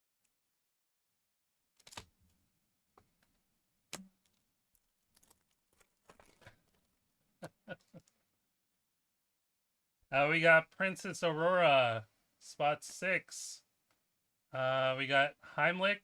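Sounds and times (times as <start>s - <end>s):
light rustling of card packs: 1.7s - 8.4s.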